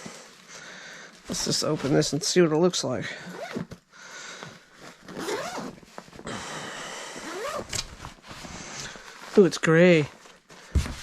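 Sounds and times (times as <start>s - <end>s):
zipper being pulled open: 3.3s - 3.8s, 4.8s - 6.2s, 7.2s - 8.2s.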